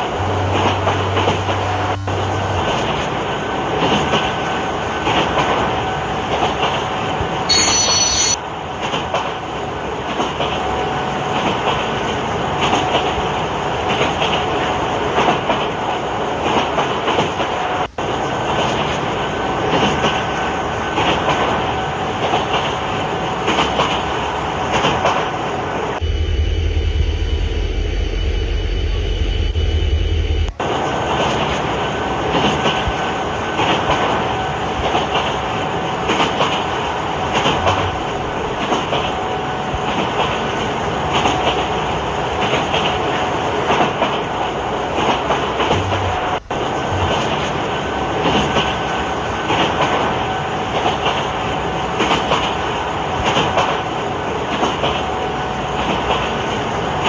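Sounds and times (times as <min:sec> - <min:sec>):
faint steady whine: 0:00.0 - 0:08.4, 0:26.0 - 0:35.4, 0:45.5 - 0:49.7
train clattering on track: 0:00.0 - 0:26.0, 0:30.4 - 0:57.0.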